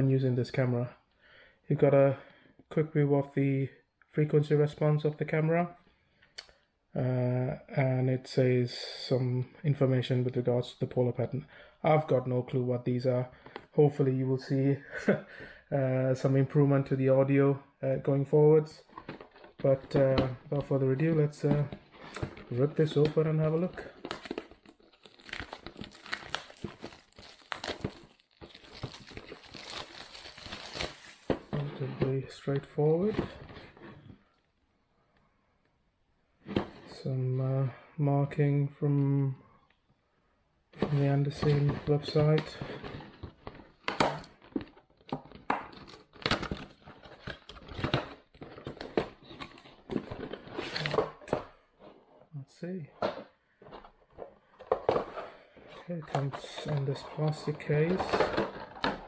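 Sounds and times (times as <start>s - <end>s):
cardboard packaging rustling: 18.8s - 34.1s, 40.8s - 52.2s, 53.0s - 59.0s
packaging being ripped open: 24.0s - 31.3s.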